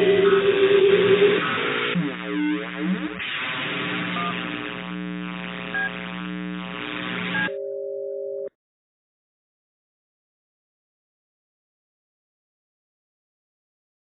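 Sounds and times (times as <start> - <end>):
distorted electronic drone: 0.0 - 7.6.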